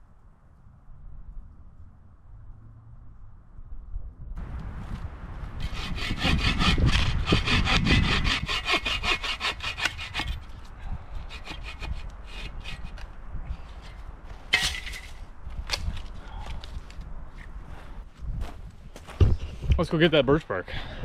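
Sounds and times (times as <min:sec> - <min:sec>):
hand saw cutting wood: 0:05.6 - 0:13.0.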